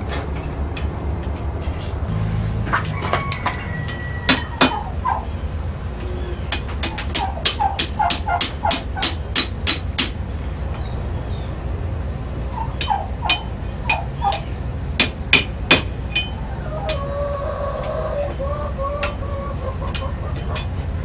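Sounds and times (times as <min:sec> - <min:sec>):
hammer striking metal on anvil: 0:04.3 - 0:04.8, 0:06.5 - 0:10.2, 0:12.8 - 0:17.0.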